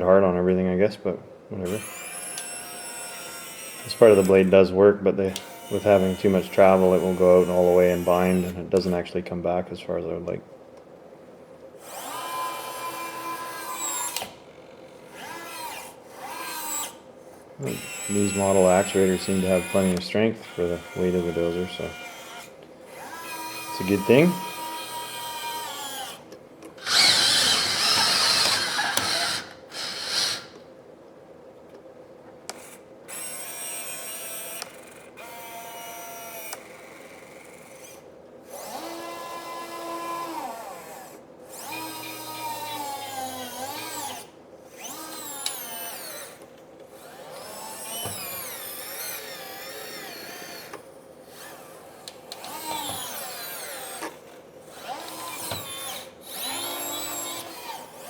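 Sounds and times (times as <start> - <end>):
small electric motors whining: 1.7 - 4.5, 5.3 - 8.6, 11.8 - 17.0, 17.6 - 26.2, 26.8 - 30.6, 32.6 - 58.0.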